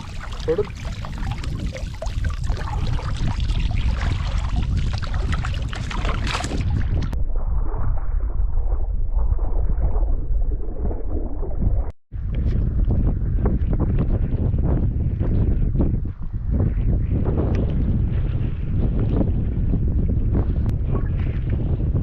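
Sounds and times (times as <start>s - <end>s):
water splashing: 0.0s - 7.2s
wind buffeting microphone: 0.0s - 22.0s.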